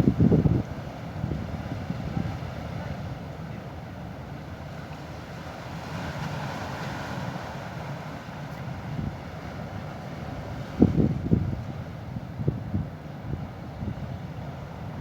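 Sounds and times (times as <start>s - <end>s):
wind rumbling on microphone: 0.0s - 3.0s, 10.5s - 14.2s
sea surf: 0.0s - 15.0s.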